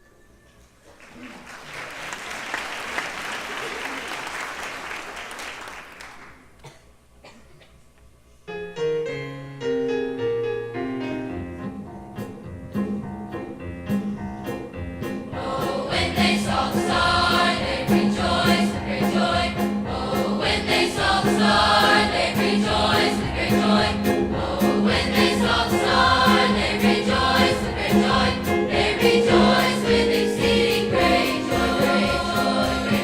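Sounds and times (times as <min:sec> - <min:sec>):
choir singing: 0:15.3 - 0:33.0.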